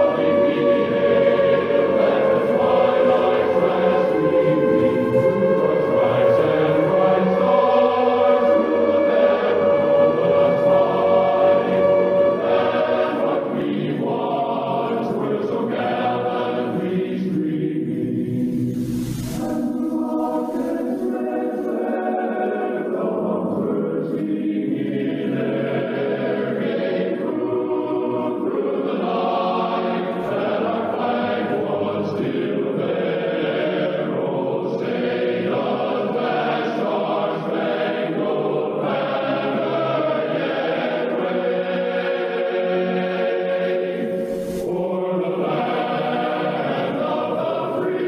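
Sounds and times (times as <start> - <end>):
choir singing sustained chords: 0.0 - 48.0
musical accompaniment: 0.0 - 48.0.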